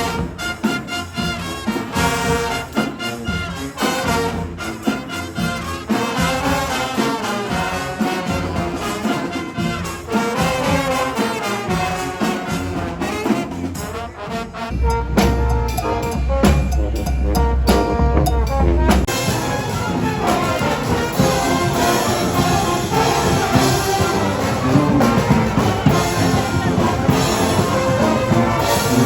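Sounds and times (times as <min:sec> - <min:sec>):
brass band playing: 0:00.0 - 0:29.0
drums: 0:00.0 - 0:29.0
trombones: 0:00.0 - 0:29.0
trumpets: 0:00.0 - 0:29.0
deep bass line: 0:14.7 - 0:29.0.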